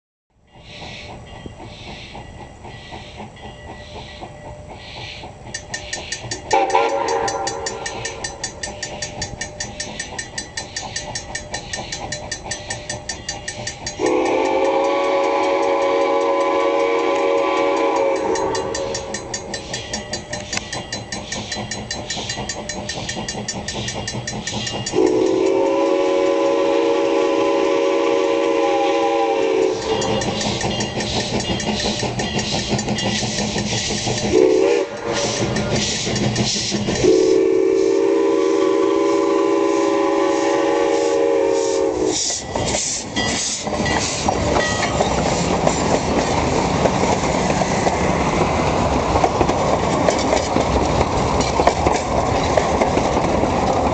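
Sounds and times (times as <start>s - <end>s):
steam engine exhaust beats: 0.3s - 53.9s
train wheels clattering on rails: 0.3s - 53.9s
steam whistle blasts: 6.5s - 8.1s, 14.0s - 19.1s, 24.9s - 32.6s, 34.3s - 43.6s.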